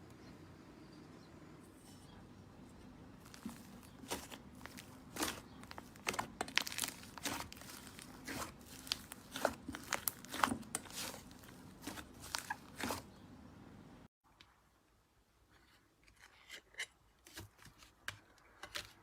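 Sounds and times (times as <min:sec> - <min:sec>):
crunchy slime crackling: 0:03.1 - 0:13.2.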